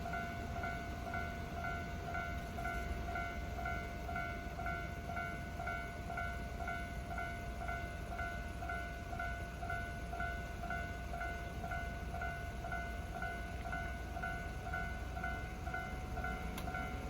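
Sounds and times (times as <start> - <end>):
level crossing warning bell: 0.0 - 17.0.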